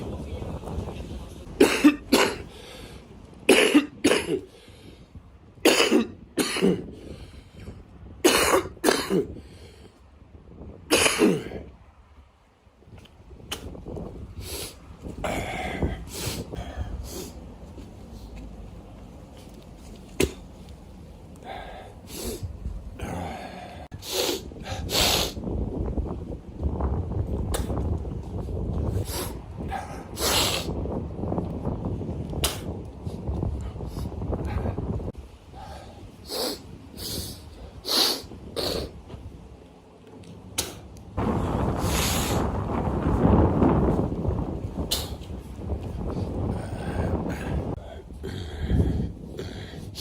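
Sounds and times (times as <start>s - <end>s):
steady rush of noise: 0.0s - 50.0s
man snorting and spitting: 21.5s - 25.4s, 27.5s - 27.8s, 28.9s - 30.8s, 32.4s - 32.8s, 36.2s - 39.0s, 40.6s - 40.9s, 44.9s - 45.3s
man snorting and hawking phlegm: 29.1s - 30.8s.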